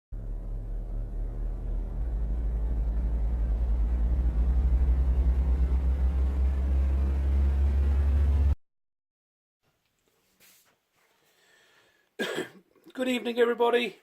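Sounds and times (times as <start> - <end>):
deep low rumble: 0.1 - 8.6.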